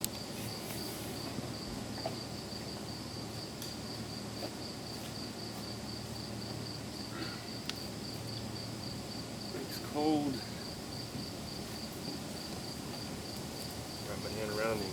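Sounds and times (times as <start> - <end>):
cricket chirping: 0.0 - 14.9.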